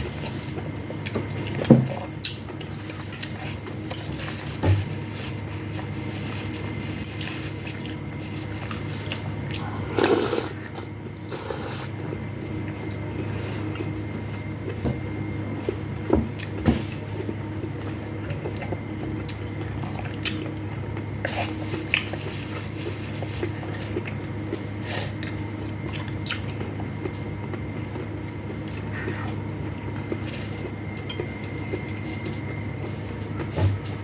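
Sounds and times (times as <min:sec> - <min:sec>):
steady low hum: 0:00.0 - 0:34.0
utensils clinking against bowls: 0:29.9 - 0:32.0.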